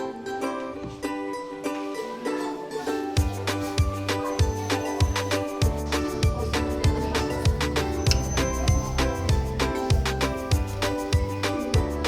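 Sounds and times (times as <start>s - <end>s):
plucked-string melody: 0.0s - 12.0s
bass and drum beat: 3.2s - 12.0s.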